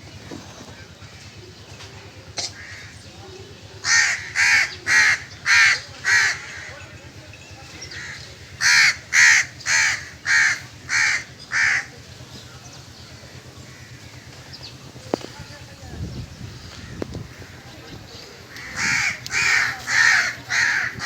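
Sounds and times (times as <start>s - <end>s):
crow cawing: 2.4s - 3.0s, 3.8s - 6.9s, 7.8s - 12.0s, 13.1s - 15.3s, 16.6s - 21.0s.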